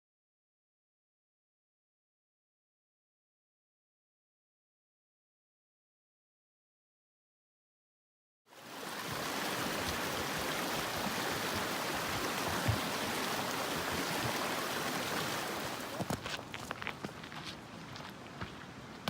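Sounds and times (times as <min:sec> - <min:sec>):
rushing creek water: 0:08.5 - 0:19.0.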